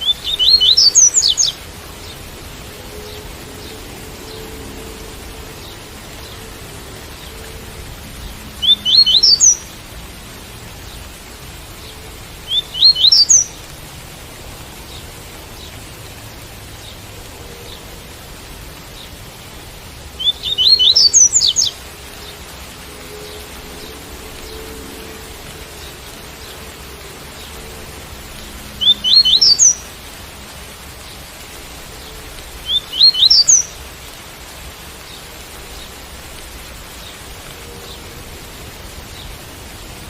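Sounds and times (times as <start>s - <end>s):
bird singing rising notes: 0.0s - 1.6s, 8.6s - 9.7s, 12.5s - 13.5s, 20.2s - 22.3s, 28.8s - 29.8s, 32.6s - 33.8s
rain hiss: 0.0s - 40.0s.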